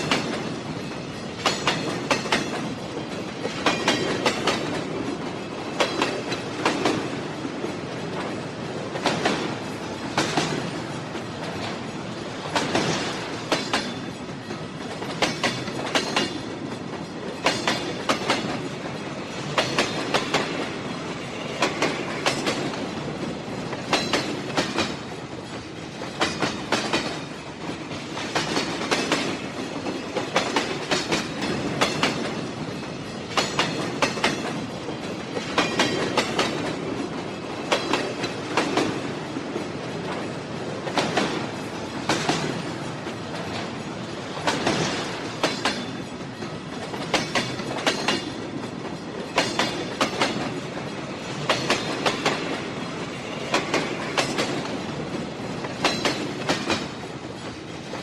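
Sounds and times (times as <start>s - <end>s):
train rolling rumble: 0.0s - 58.0s
train wheels clacking: 0.0s - 58.0s.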